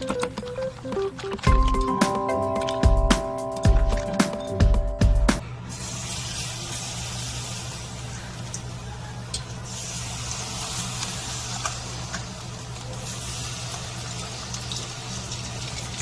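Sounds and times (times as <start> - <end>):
squid deep-frying in oil: 5.6 - 16.0.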